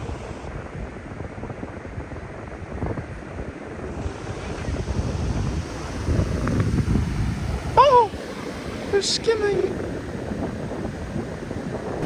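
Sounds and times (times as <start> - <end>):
wind rumbling on microphone: 0.0 - 12.0
surf rushing: 3.7 - 12.0.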